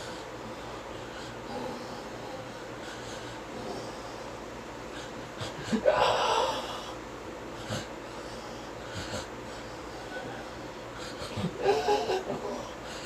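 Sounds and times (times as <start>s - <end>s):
man snoring: 5.4s - 7.0s.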